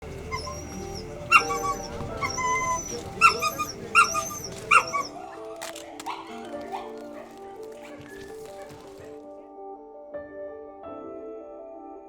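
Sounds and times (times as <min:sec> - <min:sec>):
dogs whining and yelping: 0:00.0 - 0:07.0
soft background music: 0:00.0 - 0:12.0.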